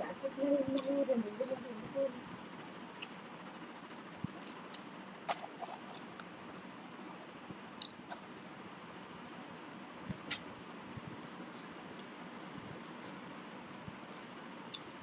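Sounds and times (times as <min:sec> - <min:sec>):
faint room hiss: 0:00.0 - 0:15.0
sharp little clicks and ticks: 0:14.1 - 0:15.0.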